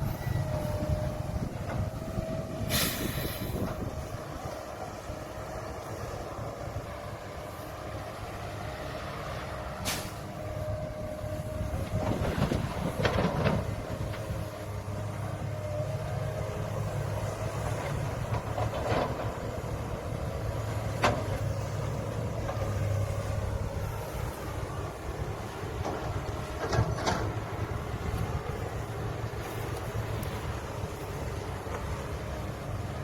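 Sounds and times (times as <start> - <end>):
heavy machinery diesel engine: 0.0 - 33.0.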